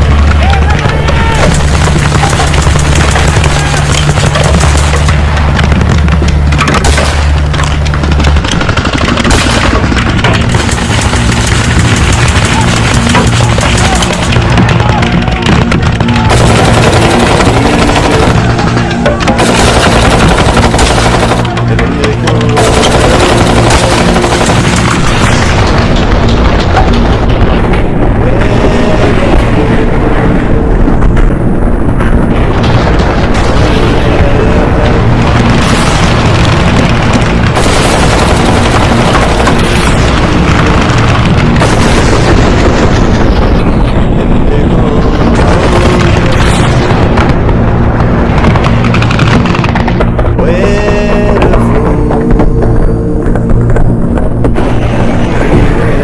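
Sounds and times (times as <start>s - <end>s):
music with booming percussion: 30.8s - 56.0s.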